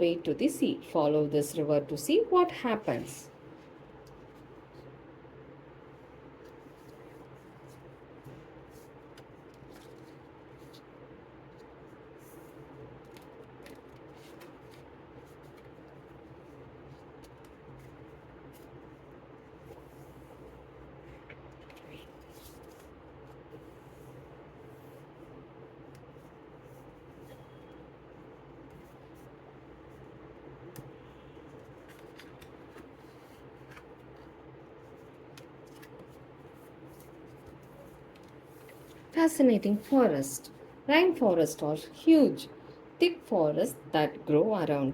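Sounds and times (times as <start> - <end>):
paper pages rustling: 6.4 - 25.1, 28.7 - 39.1
paper rustling and ticks: 12.8 - 18.8, 31.5 - 39.0.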